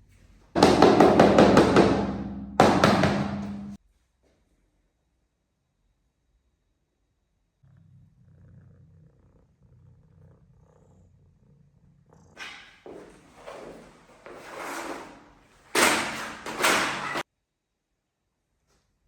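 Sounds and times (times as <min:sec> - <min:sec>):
low breathy purr: 0:07.6 - 0:12.8.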